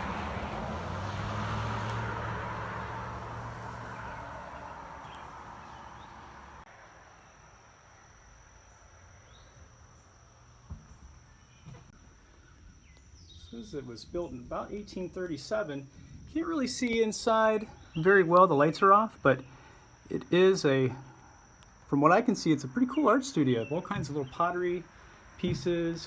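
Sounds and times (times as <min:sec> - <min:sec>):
vehicle passing by: 0:00.0 - 0:07.1
insects trilling: 0:02.5 - 0:26.0
soft thumps: 0:10.6 - 0:12.0.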